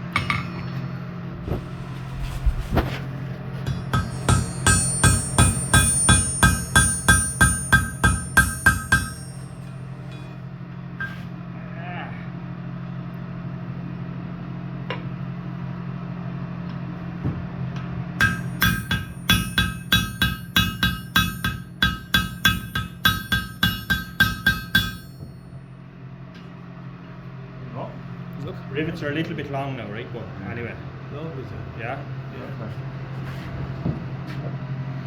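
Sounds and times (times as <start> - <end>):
hammer ringing on anvil: 0.0 - 0.7, 3.6 - 10.4, 11.0 - 11.3, 18.2 - 25.4
low steady hum: 0.0 - 11.3, 18.2 - 25.7.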